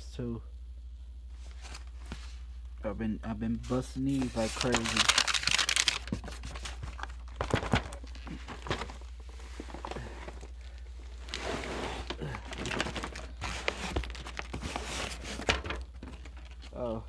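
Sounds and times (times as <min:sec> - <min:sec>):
steady low hum: 0:00.0 - 0:17.0
plastic wrap crinkling: 0:03.7 - 0:16.9
cardboard boxes knocking: 0:05.9 - 0:09.1.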